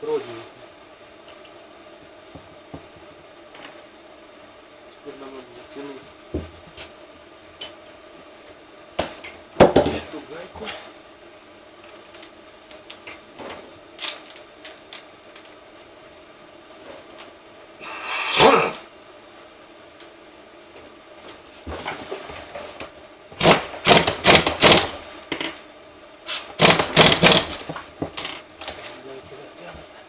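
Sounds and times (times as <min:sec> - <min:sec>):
impact wrench rattling bursts: 0:23.4 - 0:25.5, 0:26.3 - 0:28.8.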